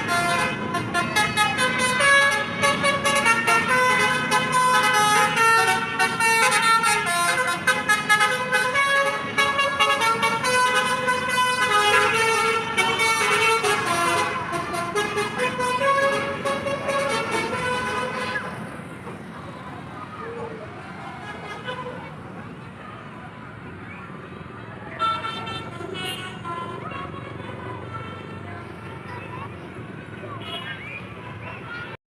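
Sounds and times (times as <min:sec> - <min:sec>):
multi-tone bus horn melody: 0:00.0 - 0:18.7, 0:21.2 - 0:22.1, 0:24.9 - 0:30.8
traffic noise: 0:00.0 - 0:32.0.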